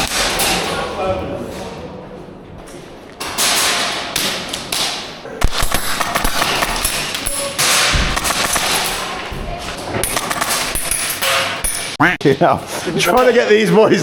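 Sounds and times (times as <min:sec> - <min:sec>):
pellets striking hard cover: 0:04.2 - 0:09.2
airsoft gunfire snapping: 0:04.2 - 0:09.3, 0:10.0 - 0:12.0.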